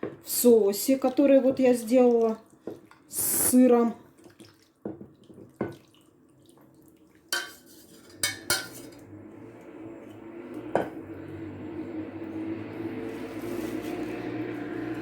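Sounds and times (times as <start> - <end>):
spoon scraping a bowl: 7.4 - 9.0.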